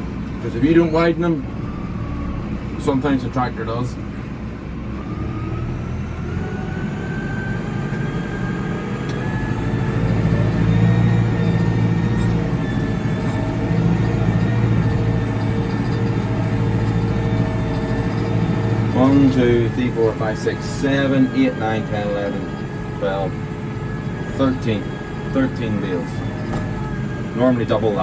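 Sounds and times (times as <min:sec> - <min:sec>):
tractor engine running: 0:00.0 - 0:28.0
thin gear whine: 0:06.6 - 0:28.0.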